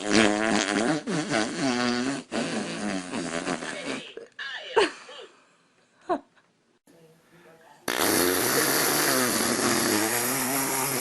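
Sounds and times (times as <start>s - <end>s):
fart noise: 0.0s - 4.3s, 7.9s - 11.0s.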